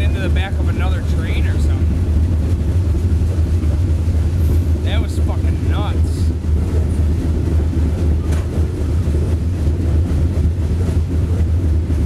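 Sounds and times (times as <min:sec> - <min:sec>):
freight train rumbling: 0:00.0 - 0:12.0.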